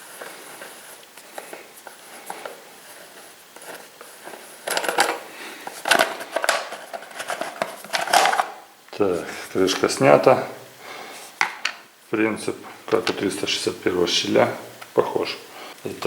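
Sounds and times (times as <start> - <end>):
plastic cover rattling and scraping: 0.0 - 8.7.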